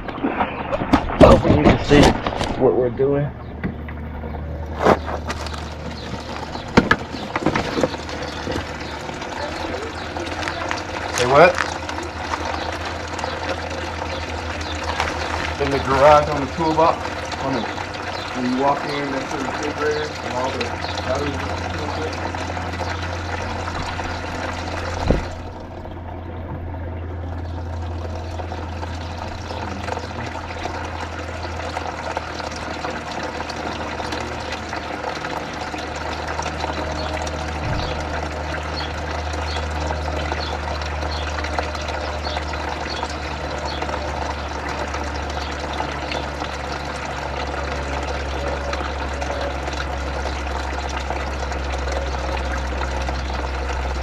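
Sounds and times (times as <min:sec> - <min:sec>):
constant low hum: 0:00.0 - 0:54.0
water running and splashing: 0:03.4 - 0:54.0.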